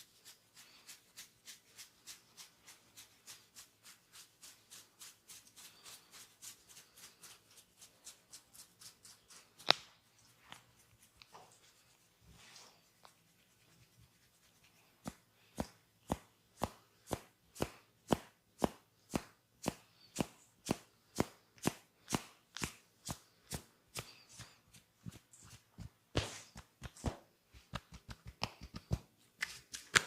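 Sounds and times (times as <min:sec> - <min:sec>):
soft rubbing: 0:00.0 - 0:17.2
hands slapping skin: 0:14.9 - 0:30.0.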